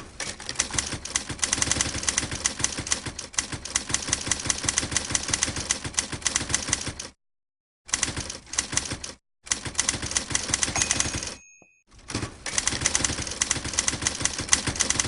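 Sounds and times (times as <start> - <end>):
typewriter typing: 0.2 - 7.2, 7.9 - 11.4, 12.4 - 15.0
short ringing tone: 10.8 - 11.8.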